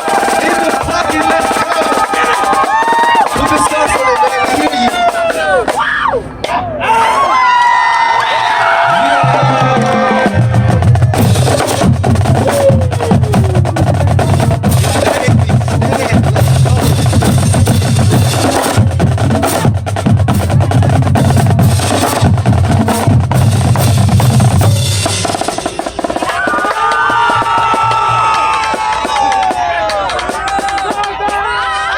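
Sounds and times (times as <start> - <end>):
rapid snare drum strokes: 0.0 - 5.8, 9.3 - 31.6
bass drums pulse: 8.9 - 25.2.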